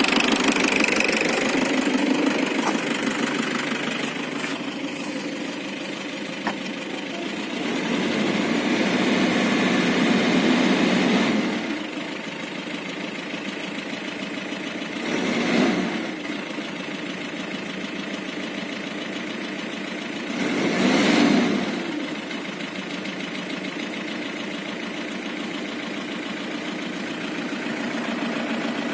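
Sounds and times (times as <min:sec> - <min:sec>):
engine revving: 0:00.0 - 0:11.9, 0:14.9 - 0:16.3, 0:20.3 - 0:22.1
diesel engine idling with knock: 0:00.0 - 0:28.9.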